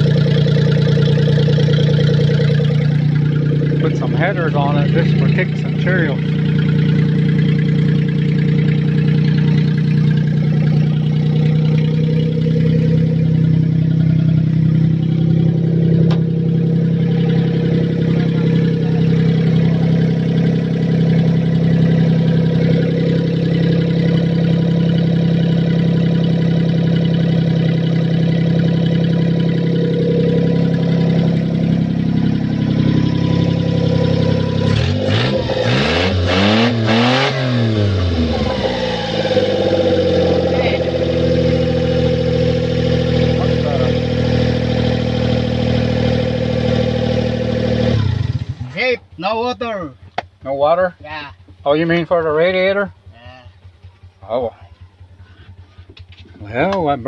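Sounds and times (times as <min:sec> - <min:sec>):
truck engine idling and revving: 0:00.0 - 0:57.0.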